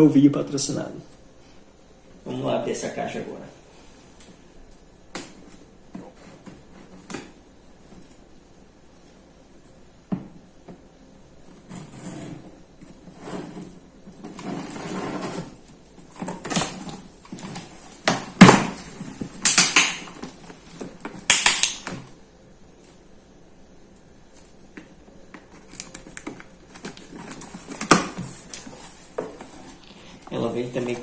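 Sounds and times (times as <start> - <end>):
cardboard rustling and scraping: 11.4 - 19.4, 25.4 - 31.0.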